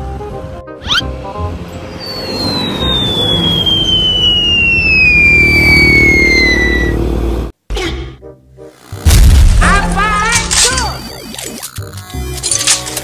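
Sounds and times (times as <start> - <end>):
loud engine-like rumble: 1.1 - 7.6
long whistle falling in pitch: 2.0 - 7.0.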